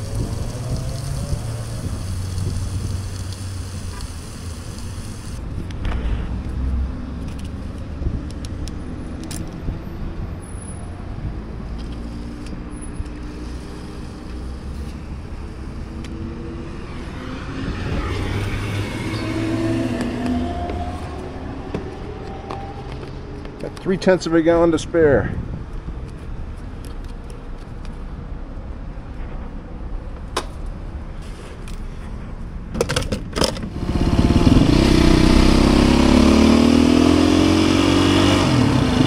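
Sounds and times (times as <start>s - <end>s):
road noise: 0.0s - 39.0s
motorcycle engine running: 33.7s - 36.8s.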